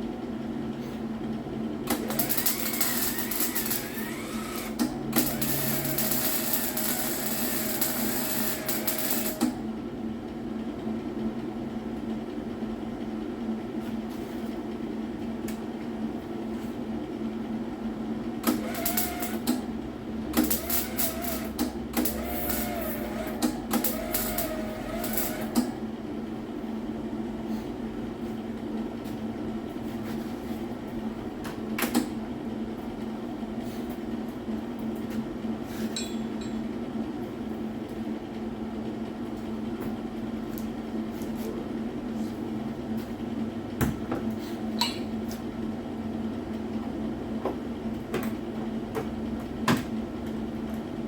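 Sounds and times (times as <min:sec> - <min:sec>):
steady low hum: 0:00.0 - 0:51.0
welding arc crackling: 0:01.9 - 0:09.5, 0:18.5 - 0:19.5, 0:20.4 - 0:25.6.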